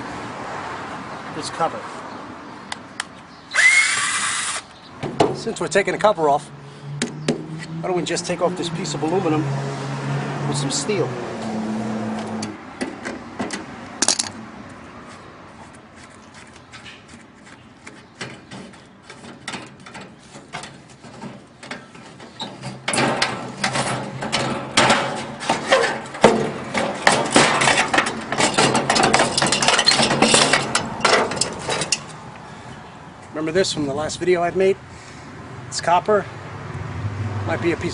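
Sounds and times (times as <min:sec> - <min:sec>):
metal parts clinking and scraping: 0:14.0 - 0:14.4, 0:18.2 - 0:32.2.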